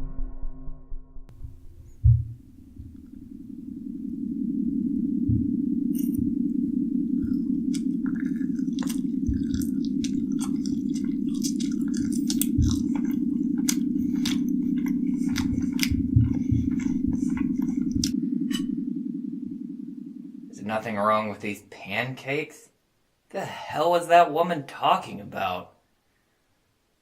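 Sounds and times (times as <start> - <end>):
low drone: 0.0 - 21.6
person chewing food: 5.9 - 6.4, 7.1 - 18.7.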